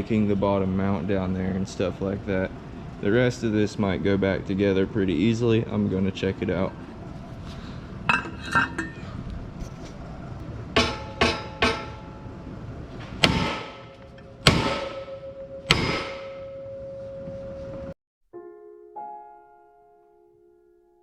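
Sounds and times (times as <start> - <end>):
hammer striking metal rack: 10.8 - 12.2, 13.2 - 16.9.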